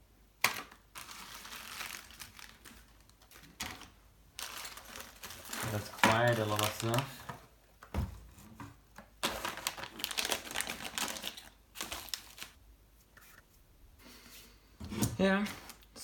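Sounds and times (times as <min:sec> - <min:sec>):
packaging crinkling and rustling: 0:00.4 - 0:07.5, 0:09.0 - 0:12.6.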